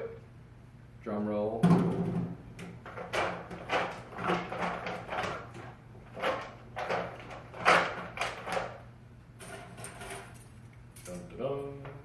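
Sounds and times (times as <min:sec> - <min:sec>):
faint steady hum: 0:00.0 - 0:12.0
objects knocking and scraping: 0:01.6 - 0:08.8.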